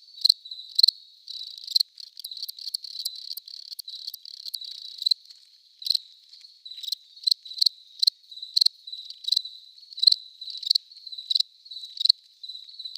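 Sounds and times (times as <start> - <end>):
crickets chirping: 0.0 - 12.9.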